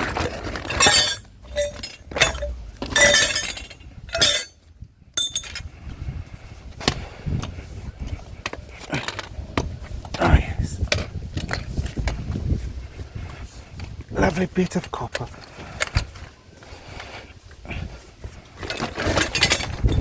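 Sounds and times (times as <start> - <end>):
metal pipes clanking: 0.0 - 4.6, 5.2 - 5.6.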